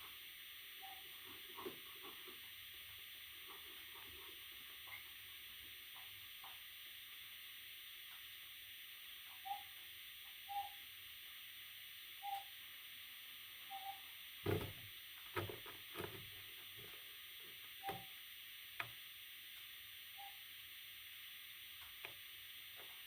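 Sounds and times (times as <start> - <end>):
steady hiss: 0.0 - 23.0
parrot chicks hooting: 10.5 - 10.8
knocks and rustles: 14.4 - 17.0.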